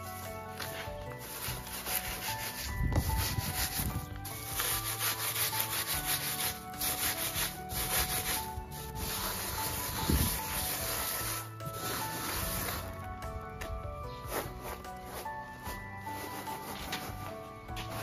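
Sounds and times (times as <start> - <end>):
hands rubbing wheat ears: 0.0 - 12.9
soft background music: 0.0 - 18.0.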